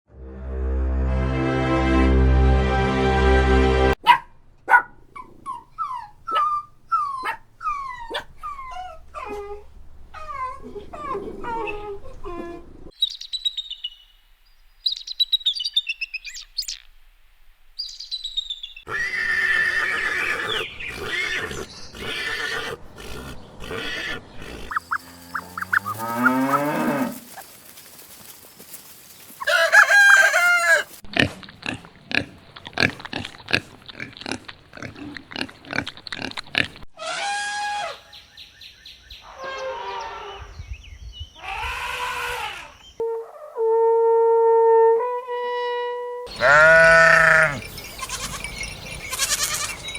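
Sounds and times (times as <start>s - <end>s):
animal calls: 4.0s - 12.9s, 18.9s - 27.5s, 29.2s - 31.0s, 46.3s - 49.9s.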